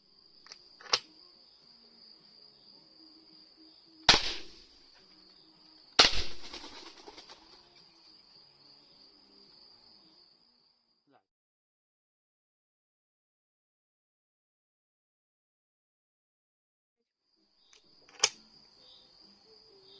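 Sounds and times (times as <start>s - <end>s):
cricket chirr: 0.0s - 11.2s, 17.2s - 19.9s
rifle shots with echo: 4.1s - 4.7s, 6.0s - 6.8s.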